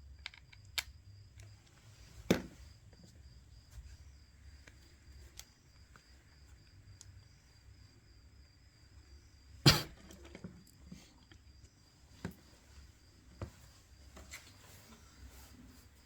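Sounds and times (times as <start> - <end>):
faint clicks of small parts: 0.0 - 3.1, 4.5 - 7.4, 10.0 - 12.6
faint steady hum with whine: 0.0 - 16.0.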